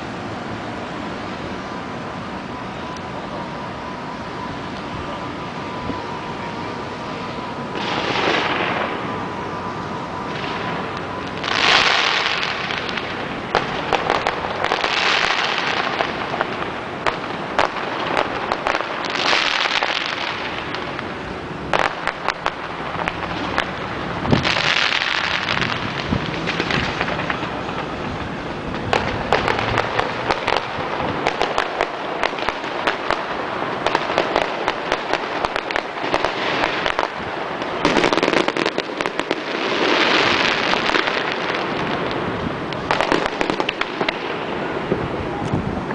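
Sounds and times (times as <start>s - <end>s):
fireworks crackling: 0.0s - 45.9s
fireworks pops and reports: 21.7s - 39.4s, 40.0s - 45.9s.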